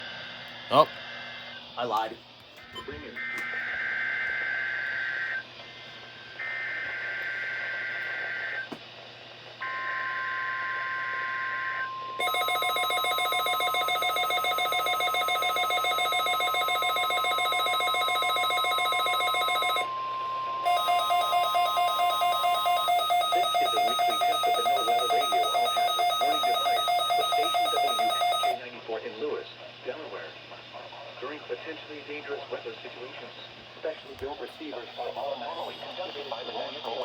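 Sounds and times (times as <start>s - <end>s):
steady alarm tone: 9.6s - 28.6s
pulsing electronic alert: 12.2s - 28.6s.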